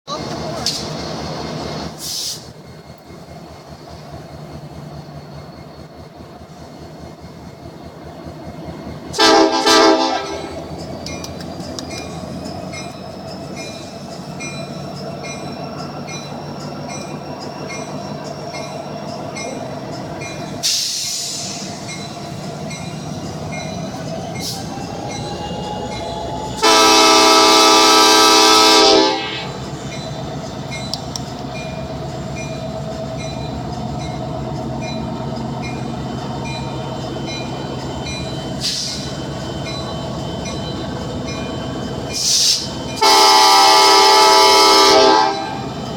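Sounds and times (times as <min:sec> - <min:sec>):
passing train rumble: 0:00.1 - 0:45.9
train horn chord: 0:09.2 - 0:10.5, 0:26.6 - 0:29.5, 0:43.0 - 0:45.6.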